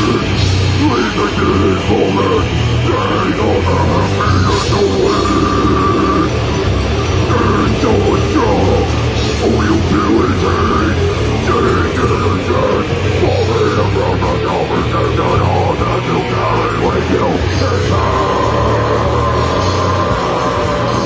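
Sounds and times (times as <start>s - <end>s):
distorted guitar: 0.0s - 21.0s
drums: 0.0s - 21.0s.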